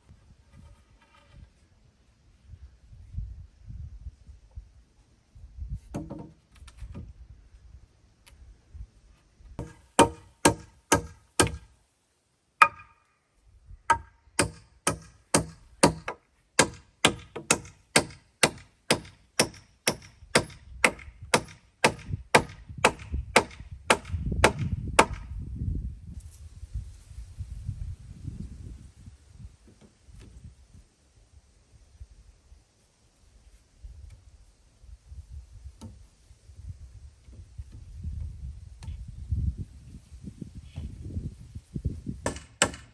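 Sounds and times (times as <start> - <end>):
axe chopping wood: 9.6 - 11.7, 12.6 - 13.0, 13.9 - 25.3, 42.3 - 42.9.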